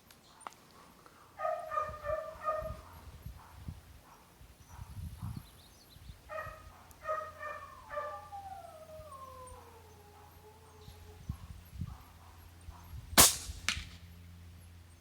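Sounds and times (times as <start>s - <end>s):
dog howling: 1.4s - 2.8s, 6.3s - 11.3s
dog whining: 6.4s - 11.3s.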